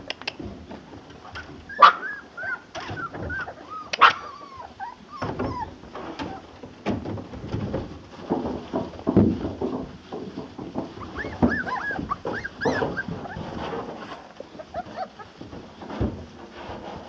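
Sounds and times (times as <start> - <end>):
puppy yips: 1.7 - 6.4, 11.0 - 13.6, 14.6 - 15.3
puppies whimpering: 1.7 - 6.6, 10.9 - 15.5.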